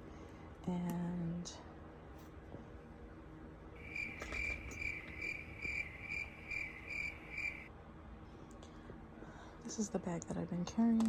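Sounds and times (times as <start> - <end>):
cricket chirping: 3.8 - 7.7.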